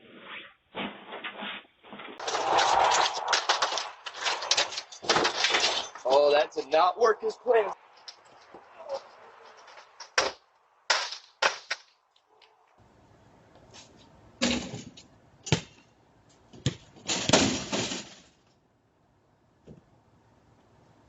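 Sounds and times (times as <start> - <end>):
sharp bangs and clattering knocks: 2.2 - 6.4, 9.4 - 11.9, 16.6 - 18.4.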